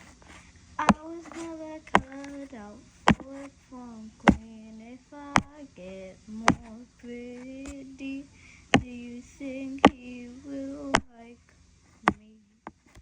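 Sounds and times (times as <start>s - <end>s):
sharp loud knocks: 3.1s - 3.3s.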